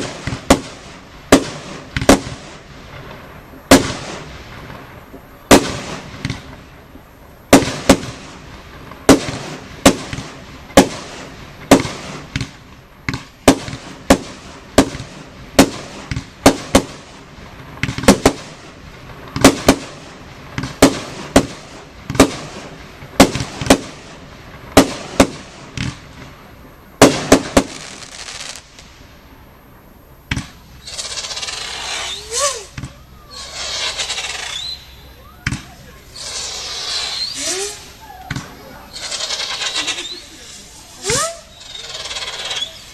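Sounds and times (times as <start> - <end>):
firework bangs with echo: 0.0 - 4.9, 5.5 - 6.8, 7.5 - 26.4, 27.0 - 28.6, 30.3 - 42.9
people talking: 32.2 - 33.6, 34.9 - 36.3, 37.4 - 42.0.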